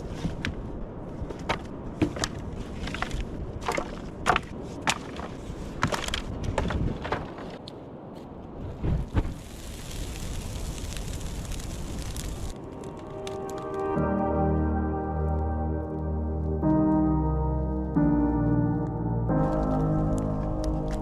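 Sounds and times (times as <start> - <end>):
steady low rumble: 9.8 - 21.0.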